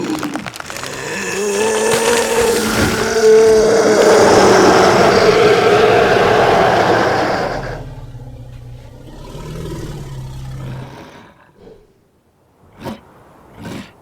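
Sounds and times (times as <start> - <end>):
monster roar: 0.0 - 10.9
low growl: 0.7 - 12.0.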